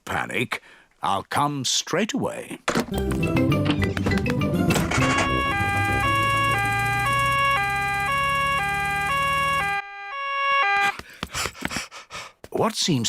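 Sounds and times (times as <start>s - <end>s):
cartoon two-tone siren: 4.7s - 11.0s.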